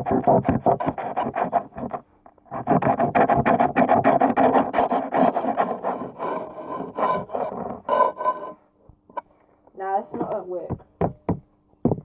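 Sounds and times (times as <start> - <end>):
knife sawing through fish: 0.0 - 8.5.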